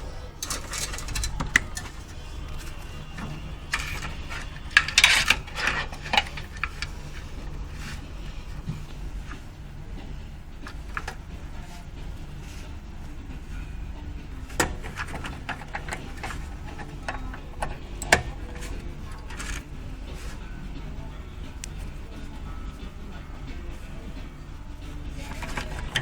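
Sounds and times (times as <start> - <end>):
sharp clicks and knocks: 0.0 - 13.2, 14.1 - 26.0
steady low hum: 0.0 - 26.0.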